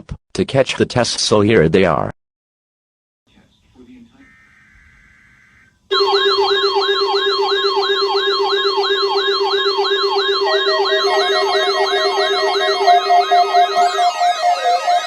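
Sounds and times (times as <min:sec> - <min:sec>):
electronic yelping siren alarm: 0:04.2 - 0:15.0.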